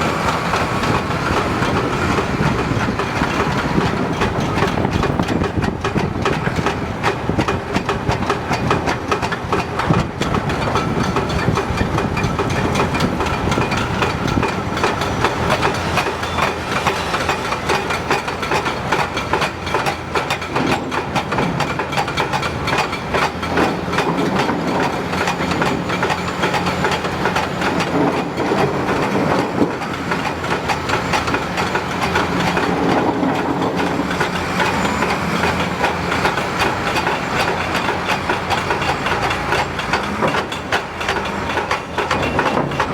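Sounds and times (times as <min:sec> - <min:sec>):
excavator diesel engine running: 0:00.0 - 0:42.9
rock and steel clanking: 0:00.0 - 0:42.9.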